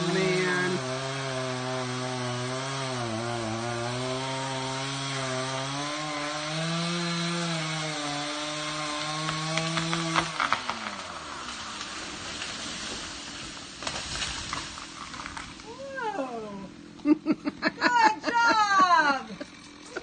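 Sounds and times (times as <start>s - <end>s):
chainsaw cutting wood: 0.0s - 15.8s, 18.4s - 20.0s
wood cracking: 7.6s - 15.8s.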